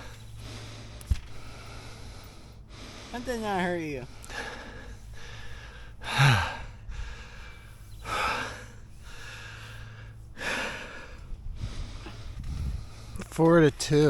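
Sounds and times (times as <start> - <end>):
man breathing heavily: 0.0 - 13.3
man groaning: 6.0 - 6.7.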